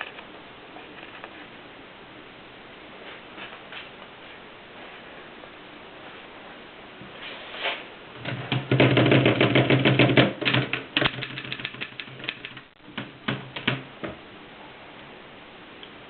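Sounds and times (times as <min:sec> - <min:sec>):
steady low hum: 0:10.8 - 0:16.0.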